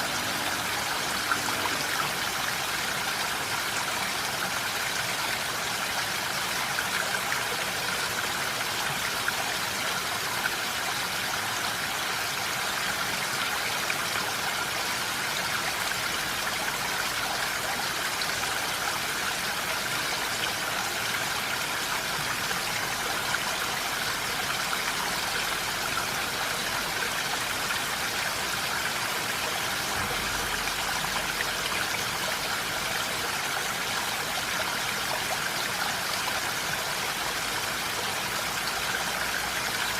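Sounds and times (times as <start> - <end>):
steady rain falling: 15.9 - 39.9.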